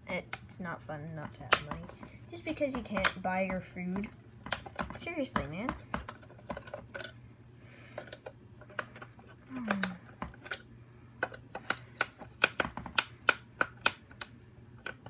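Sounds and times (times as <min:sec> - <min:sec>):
low steady hum: 0:00.0 - 0:15.0
small hard objects clicking: 0:08.0 - 0:10.6.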